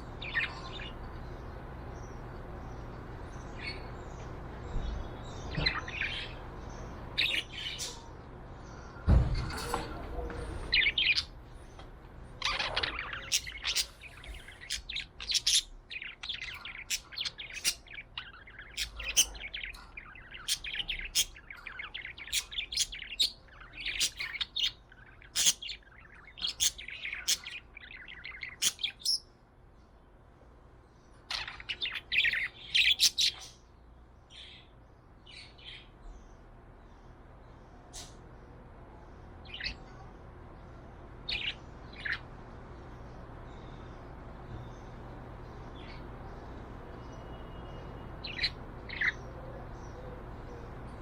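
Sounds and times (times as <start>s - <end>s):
budgerigar chirping and chattering: 7.2s - 8.0s, 12.4s - 29.3s, 31.3s - 33.6s, 48.3s - 49.3s
brief thump: 9.1s - 9.6s.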